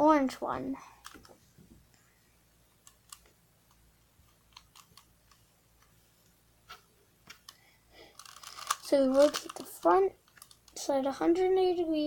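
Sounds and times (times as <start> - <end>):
puzzle cube turning clicks: 2.8 - 6.0, 7.3 - 10.8.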